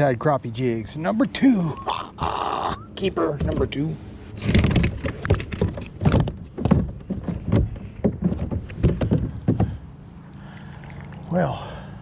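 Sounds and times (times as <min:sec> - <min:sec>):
knocks on kayak hull: 0:04.5 - 0:09.8.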